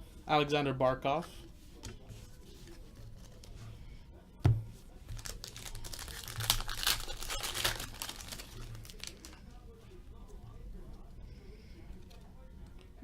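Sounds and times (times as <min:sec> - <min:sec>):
foil wrapper crinkling and tearing: 0:05.1 - 0:09.4.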